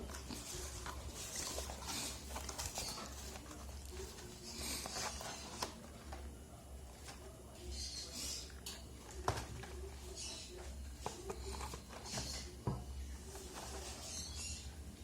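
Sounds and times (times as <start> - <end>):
packaging rustling: 0.0 - 6.3.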